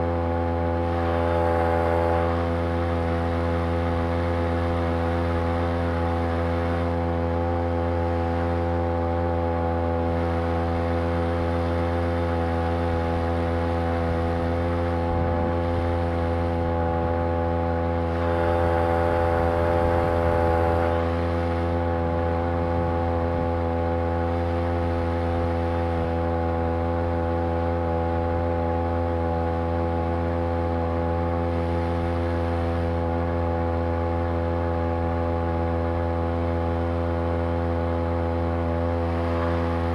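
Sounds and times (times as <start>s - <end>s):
two-stroke outboard engine running: 0.0s - 39.9s.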